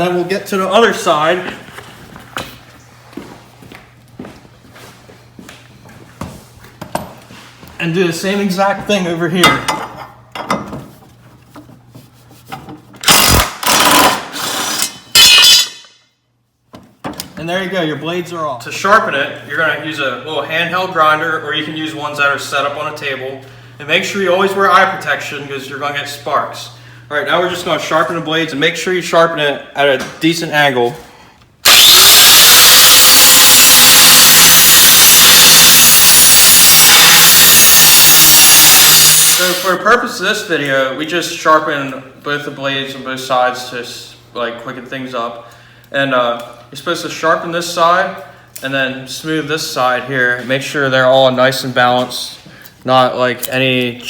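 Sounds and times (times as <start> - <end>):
impact driver hammering: 13.0 - 15.4
grinder motor hum: 31.6 - 39.7
grinder grinding metal blade: 31.7 - 39.7.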